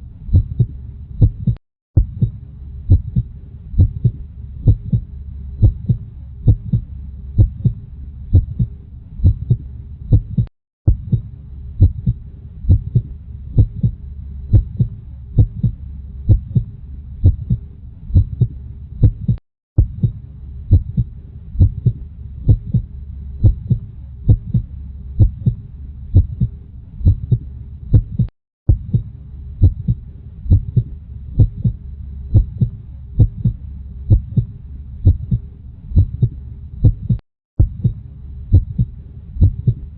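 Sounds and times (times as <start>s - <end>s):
low rumble: 0.2s - 39.9s
heartbeat thumping: 0.3s - 39.9s.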